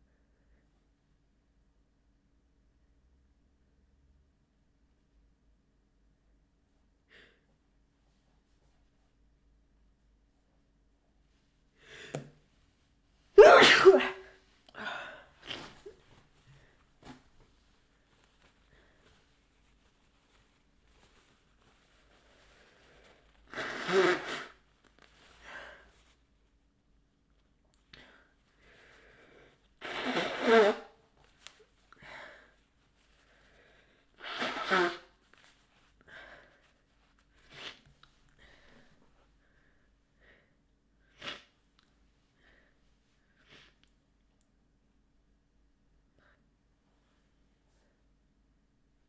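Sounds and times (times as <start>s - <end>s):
woman sneezing: 13.4s - 15.9s.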